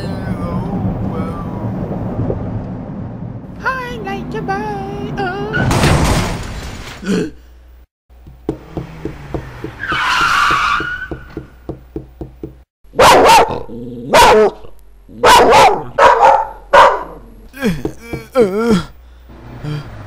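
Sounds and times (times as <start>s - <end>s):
dog barking: 12.9s - 17.2s.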